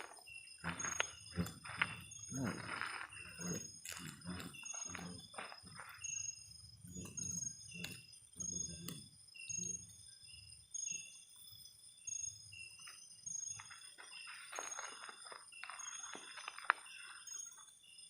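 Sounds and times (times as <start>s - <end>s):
insects chirping: 0.0s - 18.0s.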